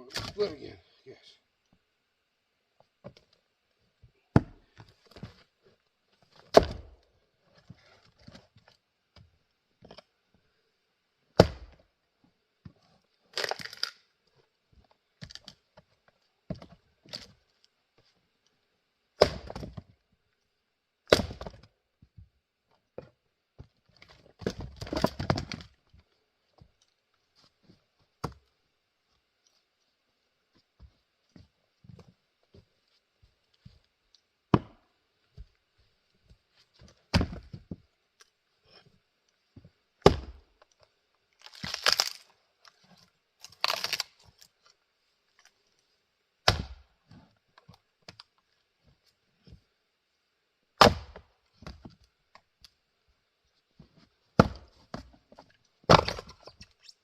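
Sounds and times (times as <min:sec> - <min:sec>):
axe striking wood: 0:06.5 - 0:07.0, 0:11.4 - 0:11.8, 0:19.2 - 0:19.8, 0:21.1 - 0:21.6, 0:40.0 - 0:40.4, 0:46.4 - 0:46.8, 0:50.8 - 0:51.2, 0:54.4 - 0:54.7, 0:55.9 - 0:56.3
wood cracking apart: 0:13.3 - 0:14.0, 0:41.4 - 0:42.3, 0:43.4 - 0:44.2.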